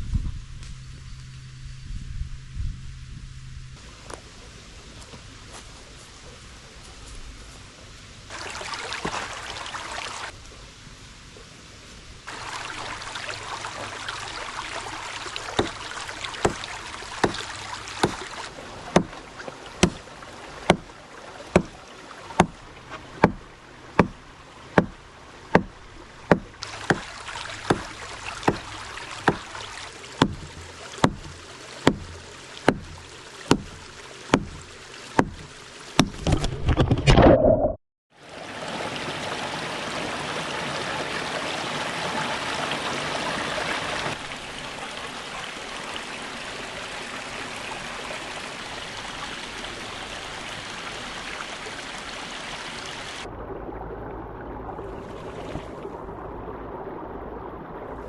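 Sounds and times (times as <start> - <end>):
evenly spaced sharp knocks: 18.0 - 18.2, 23.2 - 23.4, 24.0 - 24.2, 24.8 - 25.7, 27.7 - 28.6, 30.2 - 36.2.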